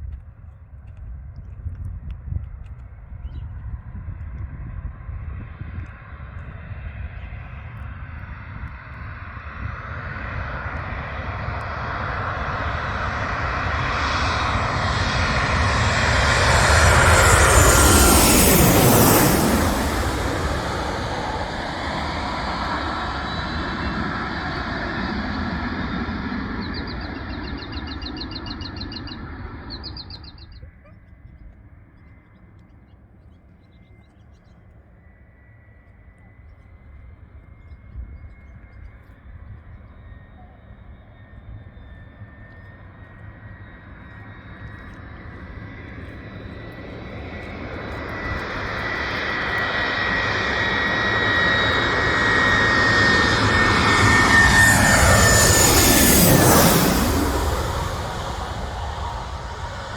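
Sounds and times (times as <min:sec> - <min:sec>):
jet airliner approaching: 0:00.1 - 0:59.9
high jet engine whine: 0:02.6 - 0:32.8, 0:33.5 - 0:59.9
steady loud rumble: 0:10.8 - 0:30.4, 0:47.4 - 0:59.9.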